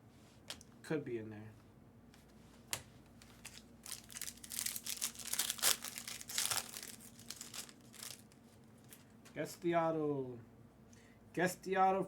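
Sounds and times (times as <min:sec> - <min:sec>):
wrapper tearing and crinkling: 0:03.2 - 0:08.4.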